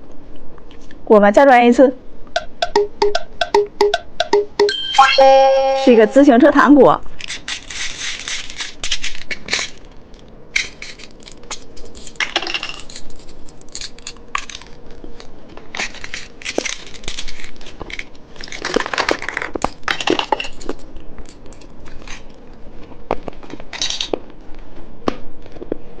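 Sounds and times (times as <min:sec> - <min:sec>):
crunching and chewing candy: 0:07.2 - 0:24.4.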